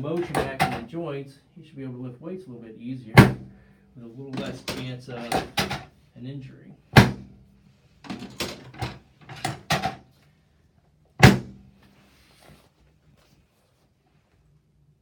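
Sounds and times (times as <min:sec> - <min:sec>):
table knocks and clicks: 0:04.4 - 0:05.9, 0:08.1 - 0:10.0.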